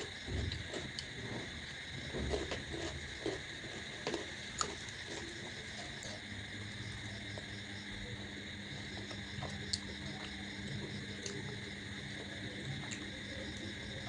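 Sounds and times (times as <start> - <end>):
person chewing: 2.3 - 6.2.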